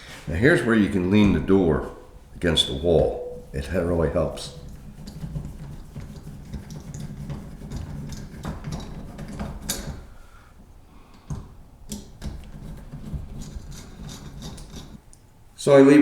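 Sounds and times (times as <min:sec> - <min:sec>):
metal door knob parts clicking: 0:03.3 - 0:15.3.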